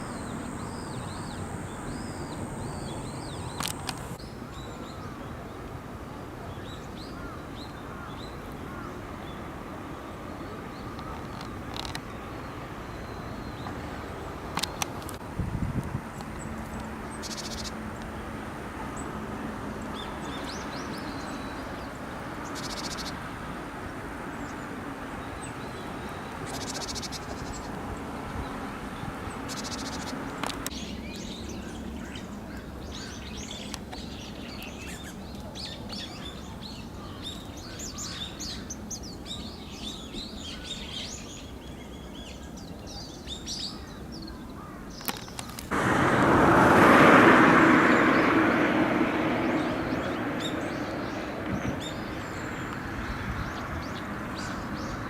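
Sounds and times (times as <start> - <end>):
birds chirping and twittering: 0.0 - 5.5, 16.1 - 18.2, 19.8 - 23.2, 24.3 - 45.8, 47.7 - 55.0.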